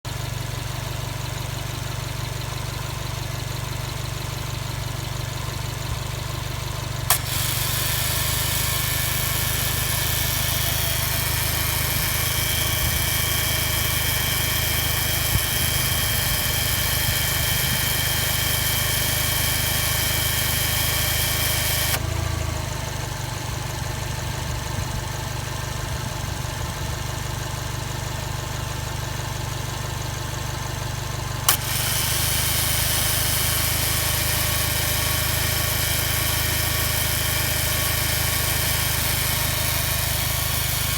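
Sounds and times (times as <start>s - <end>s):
car engine idling: 0.1s - 40.9s
compressor click: 7.1s - 22.1s, 31.4s - 40.9s.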